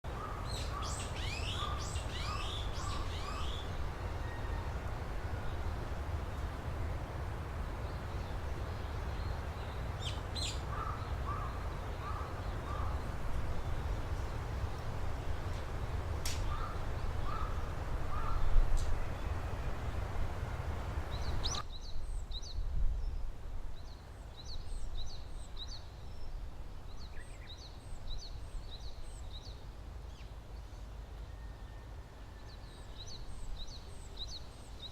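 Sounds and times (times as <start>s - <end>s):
birds chirping: 0.1s - 4.8s, 7.7s - 15.6s, 16.4s - 19.8s, 20.5s - 22.5s
crow cawing: 10.7s - 13.0s, 16.5s - 18.4s.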